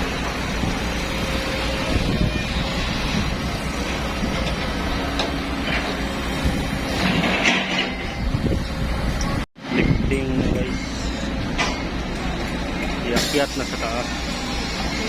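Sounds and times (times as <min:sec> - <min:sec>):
engine rumbling: 0:00.0 - 0:15.0.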